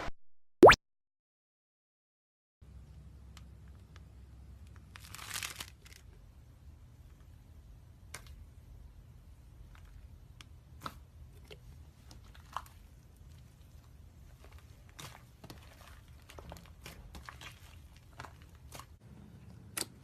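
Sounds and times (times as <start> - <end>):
crinkling of handled object: 4.6 - 6.3, 11.4 - 19.0.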